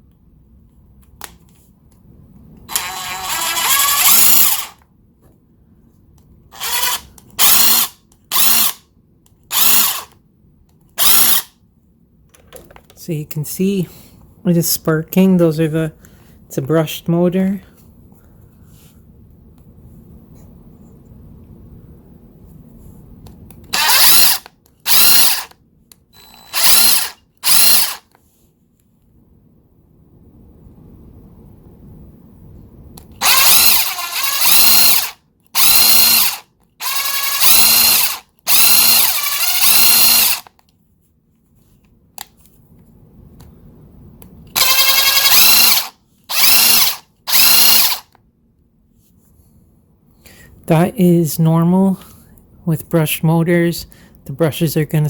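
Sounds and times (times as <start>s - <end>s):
impact wrench motor whirring: 2.7s - 4.8s, 6.5s - 8.8s, 9.5s - 10.2s, 11.0s - 11.5s, 23.7s - 25.6s, 26.2s - 28.2s, 33.2s - 40.6s, 44.5s - 48.2s.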